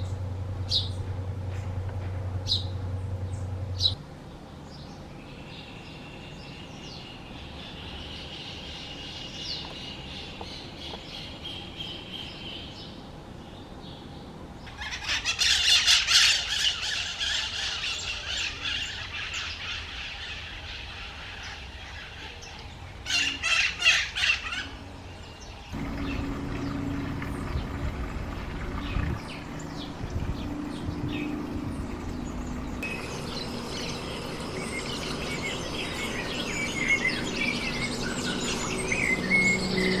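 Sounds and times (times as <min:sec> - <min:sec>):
songbirds chirping: 0:25.3 - 0:40.0
low rumble: 0:25.8 - 0:40.0.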